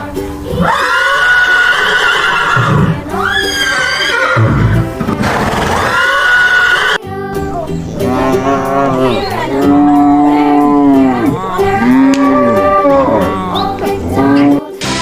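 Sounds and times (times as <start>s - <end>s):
cow mooing: 7.9s - 14.6s.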